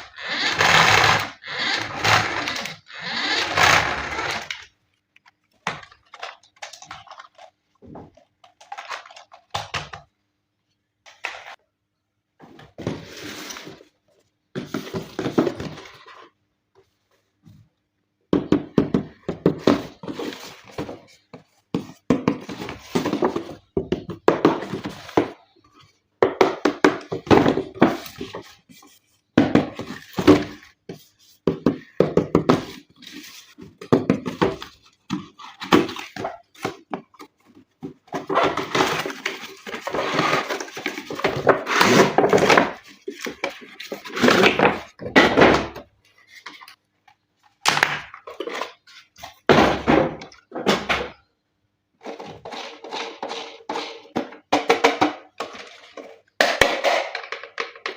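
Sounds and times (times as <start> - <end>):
plastic toy parts clattering: 5.4 - 10.0, 52.0 - 57.9.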